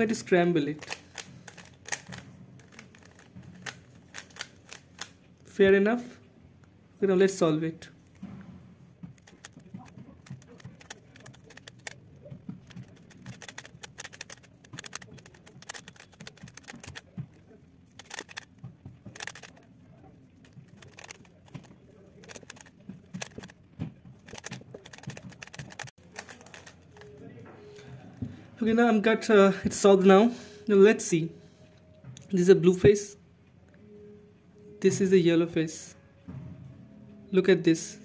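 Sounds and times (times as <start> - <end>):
puzzle cube layers clicking: 0.8 - 5.1, 9.2 - 12.0, 12.6 - 17.1, 18.0 - 18.5, 19.2 - 19.6, 20.7 - 21.6, 22.2 - 23.5, 24.3 - 27.0.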